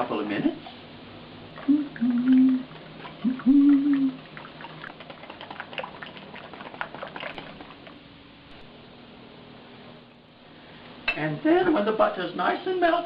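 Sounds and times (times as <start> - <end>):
person humming: 1.6 - 4.2
wire whisk beating batter: 2.3 - 7.9.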